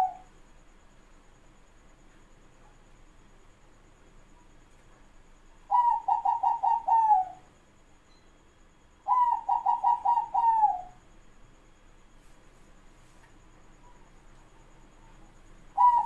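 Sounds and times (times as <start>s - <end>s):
dove cooing: 0.0s - 0.3s, 5.7s - 7.5s, 9.1s - 11.0s, 15.7s - 16.0s.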